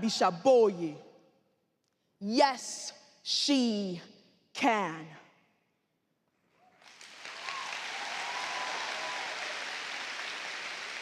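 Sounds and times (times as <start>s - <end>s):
audience applauding: 6.7s - 11.0s.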